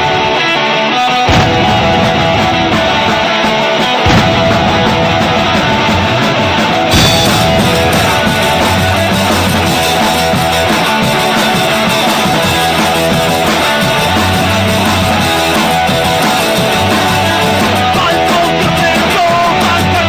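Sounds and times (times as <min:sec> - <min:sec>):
loud rock music with guitar: 0:00.0 - 0:20.0
sharp hit: 0:01.3 - 0:17.8.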